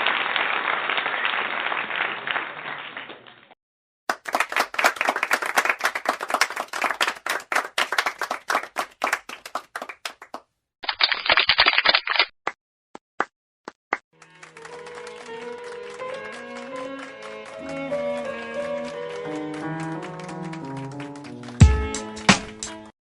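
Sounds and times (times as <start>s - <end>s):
crowd applause: 4.1s - 10.4s, 14.2s - 22.9s
individual claps: 4.1s - 10.5s, 13.9s - 22.9s.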